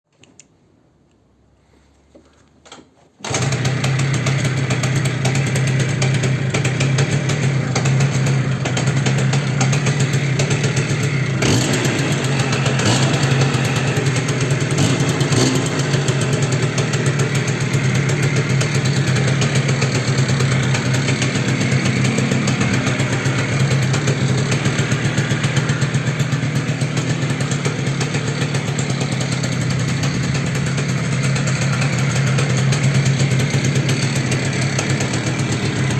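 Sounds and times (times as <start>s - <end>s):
scooter engine starting and idling: 2.6s - 35.9s
engine knocking: 3.3s - 35.9s.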